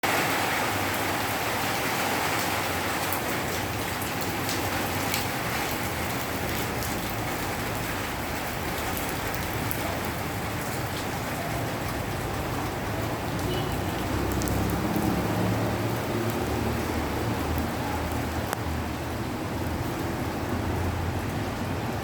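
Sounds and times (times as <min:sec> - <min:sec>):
steady rain hiss: 0:00.2 - 0:22.0
raindrop ticks: 0:02.4 - 0:20.6.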